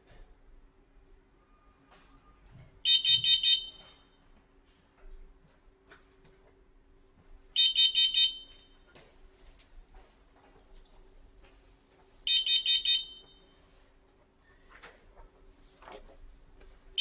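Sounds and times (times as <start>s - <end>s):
alarm beeping: 2.9s - 4.0s, 7.6s - 8.6s, 12.3s - 13.4s.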